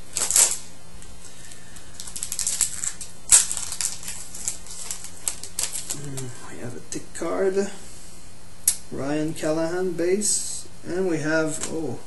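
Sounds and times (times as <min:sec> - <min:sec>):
wrapper crinkling and tearing: 0:00.1 - 0:06.3.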